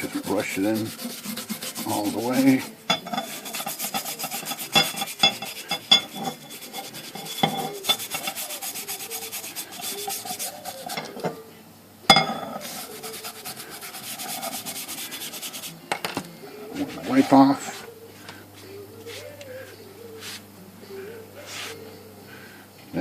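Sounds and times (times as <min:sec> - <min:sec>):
brush scrubbing: 0:00.0 - 0:11.2, 0:12.6 - 0:15.8, 0:16.7 - 0:17.8, 0:20.2 - 0:20.5, 0:21.4 - 0:21.8.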